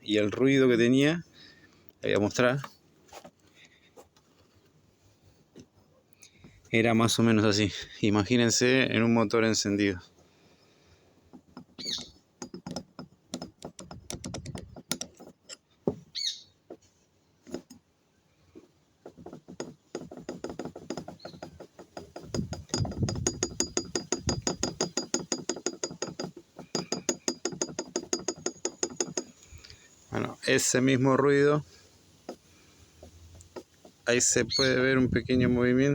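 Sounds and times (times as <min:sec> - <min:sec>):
metal engine parts clacking: 0:19.5 - 0:29.8.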